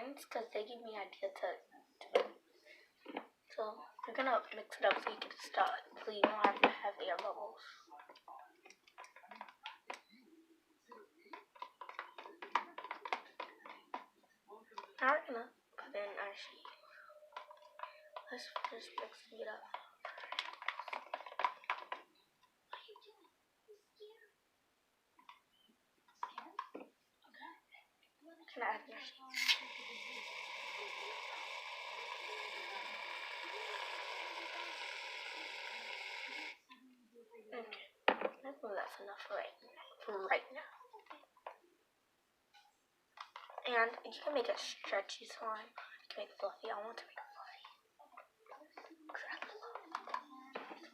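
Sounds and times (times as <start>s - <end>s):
spoon stirring glue: 29.3s - 36.7s.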